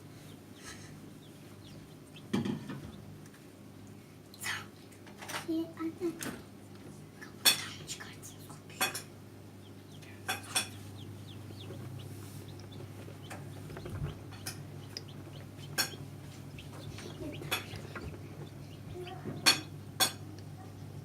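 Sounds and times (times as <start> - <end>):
chicks peeping: 0.0 - 3.4, 8.1 - 21.0.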